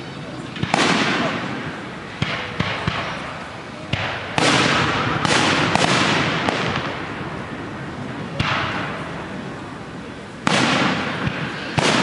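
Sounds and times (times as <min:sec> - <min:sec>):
firework bangs: 0:00.6 - 0:09.4, 0:10.4 - 0:12.0.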